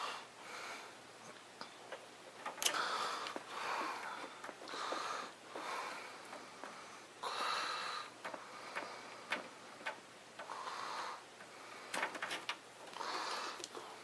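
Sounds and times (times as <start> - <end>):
person breathing close: 2.6 - 9.7, 10.4 - 12.1, 12.9 - 14.0.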